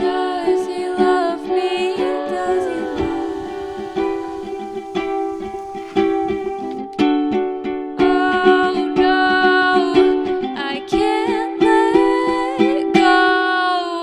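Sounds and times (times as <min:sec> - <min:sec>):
sustained gliding melody: 0:01.4 - 0:06.9.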